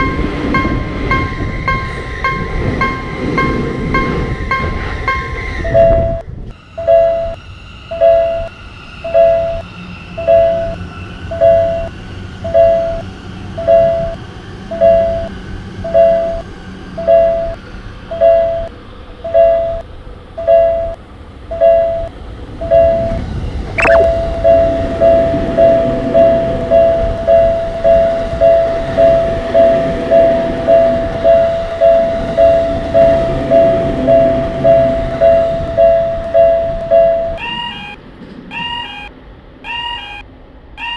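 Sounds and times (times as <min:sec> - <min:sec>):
level-crossing warning bell: 0:05.7 - 0:06.2, 0:06.8 - 0:18.7, 0:19.3 - 0:19.8, 0:20.4 - 0:23.2, 0:24.4 - 0:39.1, 0:39.7 - 0:40.2
sudden sharp sound: 0:23.8 - 0:24.2.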